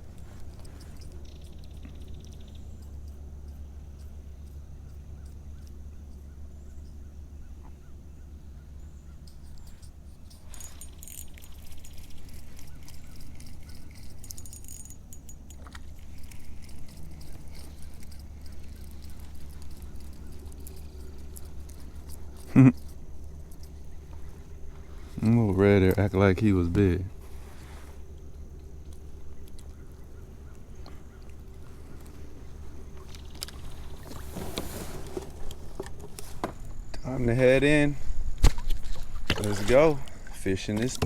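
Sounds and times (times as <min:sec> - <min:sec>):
low rumble on open water: 0:00.0 - 0:41.0
faint bird calls: 0:16.2 - 0:25.2, 0:29.0 - 0:34.2.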